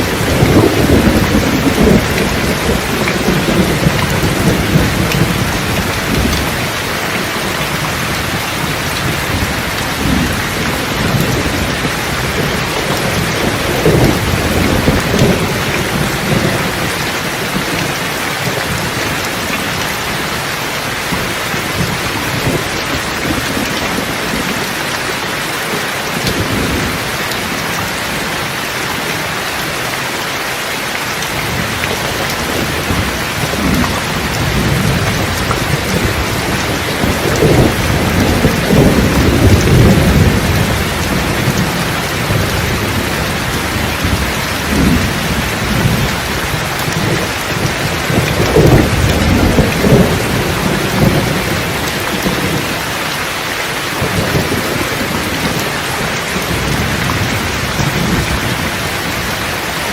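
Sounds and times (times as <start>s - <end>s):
thunder rumbling: 0.0s - 28.4s, 31.3s - 59.9s
steady rain: 0.0s - 59.9s.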